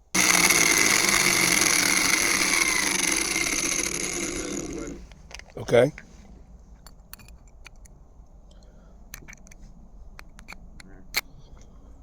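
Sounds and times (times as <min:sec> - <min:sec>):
small parts clicking: 0:00.0 - 0:05.6
faint steady hum: 0:00.0 - 0:12.0.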